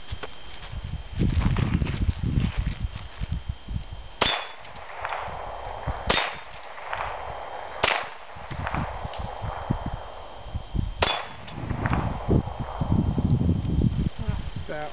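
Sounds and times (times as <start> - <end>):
pistol shots: 4.2 - 9.6, 11.0 - 12.3.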